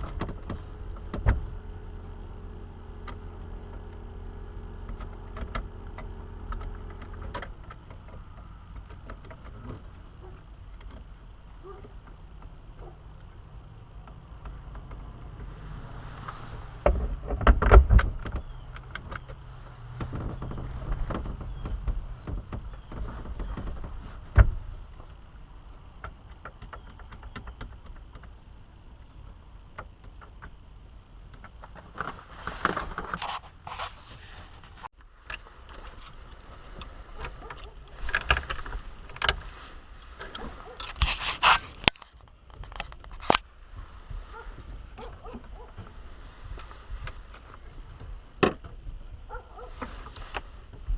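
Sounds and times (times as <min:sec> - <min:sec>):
metallic tool clicks and scraping: 0:40.2 - 0:43.6.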